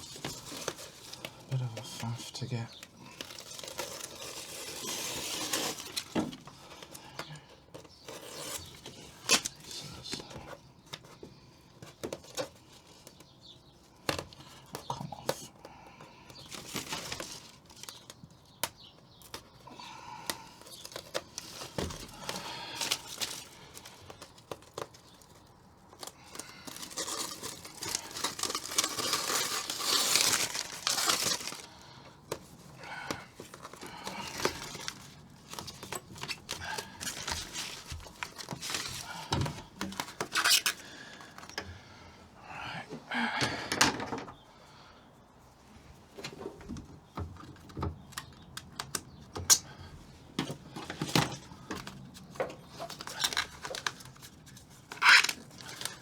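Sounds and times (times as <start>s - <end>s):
crinkling and tearing sheet: 0.0s - 11.1s, 13.9s - 41.6s, 50.9s - 56.0s.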